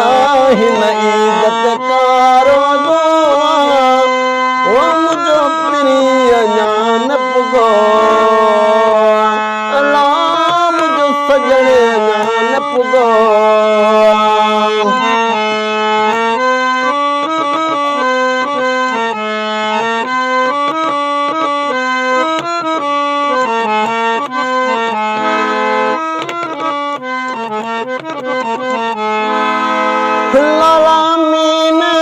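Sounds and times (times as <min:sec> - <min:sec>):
free-reed instrument melody: 0:00.0 - 0:32.0.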